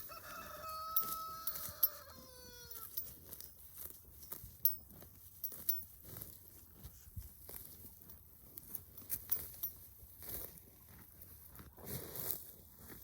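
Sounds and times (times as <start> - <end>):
rooster crowing: 0.0 - 3.0.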